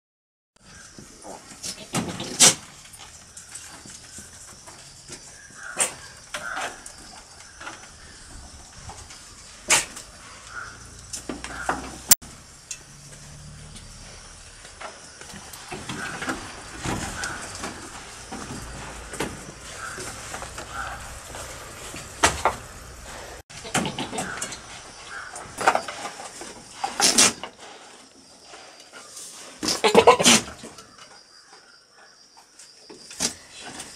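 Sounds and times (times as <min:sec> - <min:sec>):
billy goat bleating: 0:29.7 - 0:30.4.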